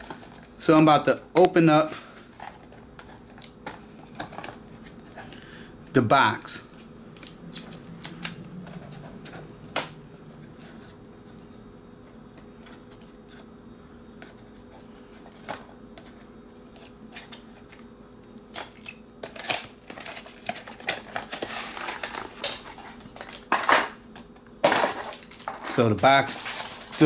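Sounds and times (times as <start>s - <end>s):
packaging rustling: 19.2s - 23.7s, 24.7s - 27.0s.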